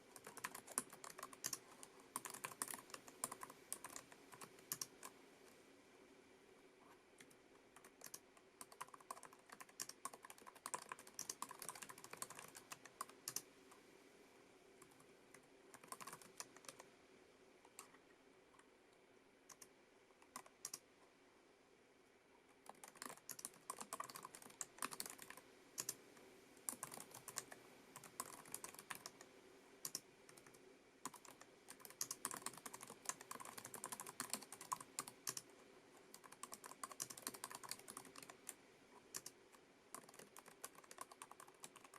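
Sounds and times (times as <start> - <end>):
keyboard keys clicking: 0.2 - 5.1, 7.2 - 13.4, 15.8 - 16.8, 22.7 - 26.0, 26.7 - 29.2, 29.8 - 35.5, 36.1 - 38.6, 39.2 - 41.9.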